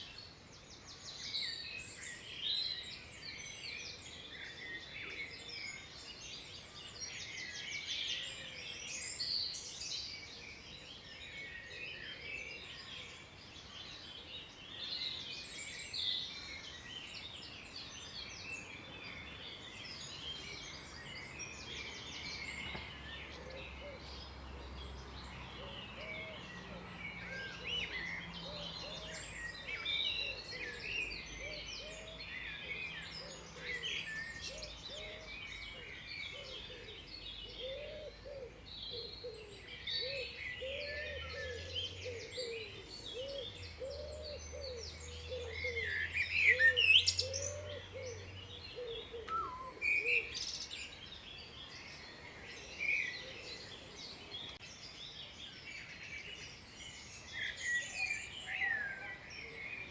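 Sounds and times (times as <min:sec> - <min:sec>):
wild birds singing and chirping: 0:00.0 - 0:59.9.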